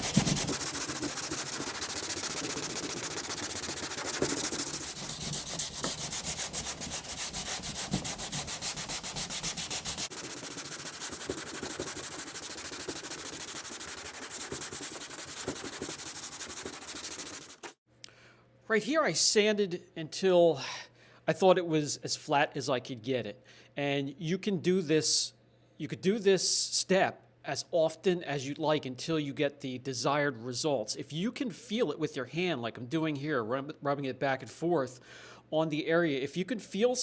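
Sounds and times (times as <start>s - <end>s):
sandpaper rasping on body filler: 0.0s - 17.8s.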